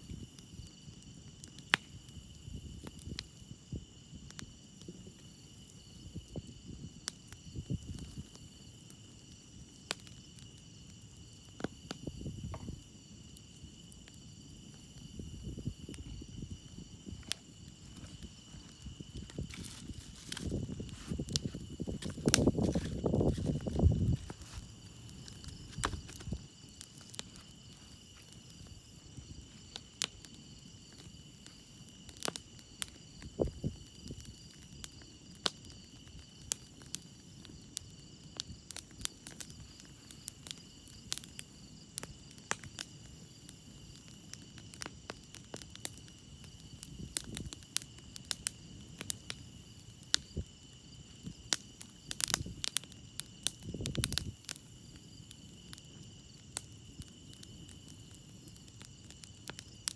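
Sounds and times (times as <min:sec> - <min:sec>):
campfire crackling and popping: 0:00.0 - 0:59.9
crickets chirping: 0:00.0 - 0:59.9.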